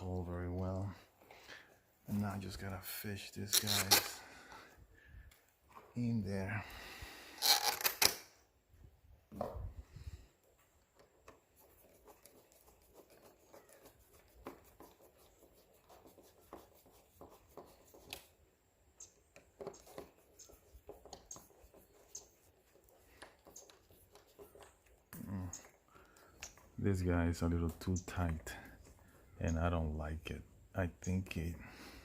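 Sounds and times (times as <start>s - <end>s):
small metal clicks and scraping: 7.4s - 8.3s, 22.1s - 26.8s.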